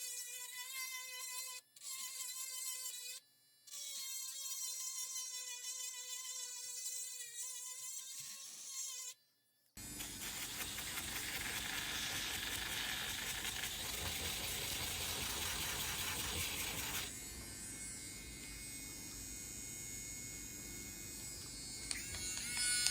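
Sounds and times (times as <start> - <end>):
rotary tool motor whining: 10.0 - 17.3.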